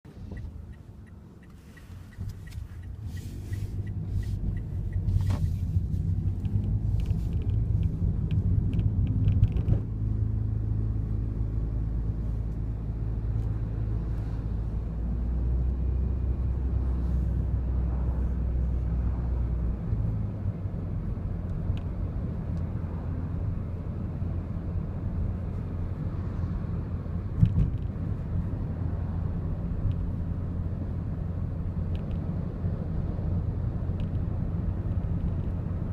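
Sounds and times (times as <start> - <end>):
engine and road rumble: 0.0 - 35.9
seat belt clicking and rattling: 1.8 - 9.9.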